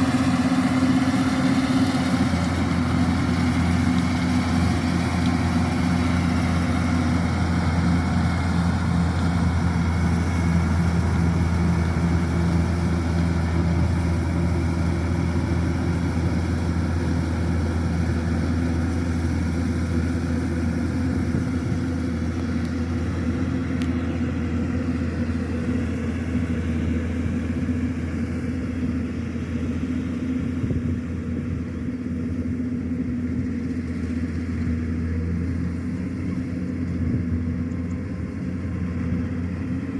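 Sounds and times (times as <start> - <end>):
combine harvester diesel engine: 0.0 - 39.9.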